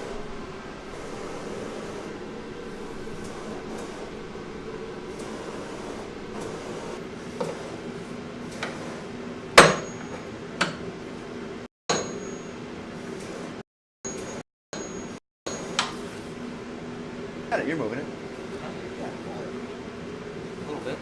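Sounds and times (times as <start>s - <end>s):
steady low hum: 0.0s - 9.6s
hammer knocks on metal: 9.6s - 10.8s.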